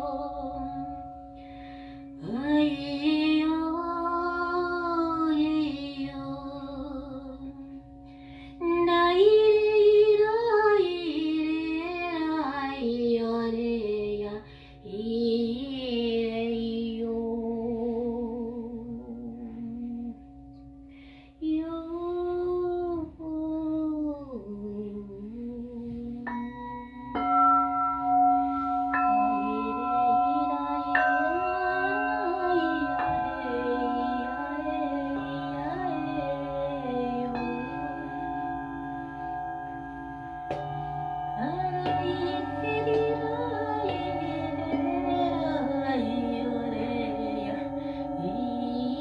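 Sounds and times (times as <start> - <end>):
woman singing wordlessly: 0.0 - 1.2, 2.1 - 7.8, 8.6 - 20.3, 21.4 - 27.2, 28.6 - 39.4, 40.5 - 49.0
singing bowl drone: 0.0 - 49.0
singing bowls struck: 26.2 - 49.0.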